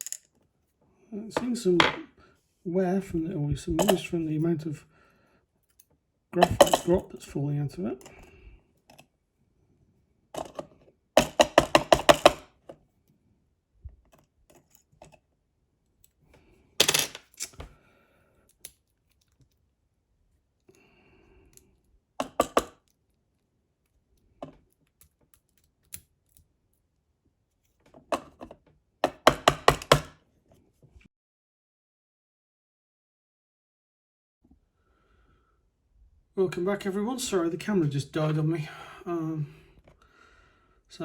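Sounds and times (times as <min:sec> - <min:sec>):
metal lock parts knocking: 0:06.4 - 0:07.0.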